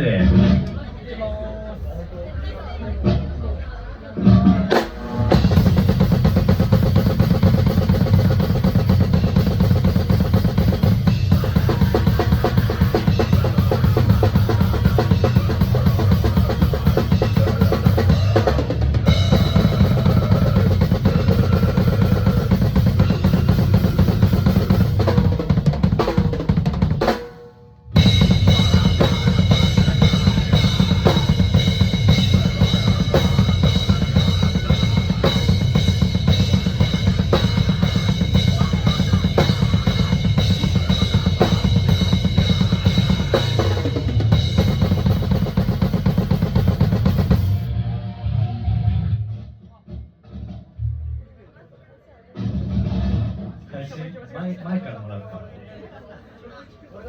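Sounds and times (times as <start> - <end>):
drum kit played fast: 4.2 - 47.7.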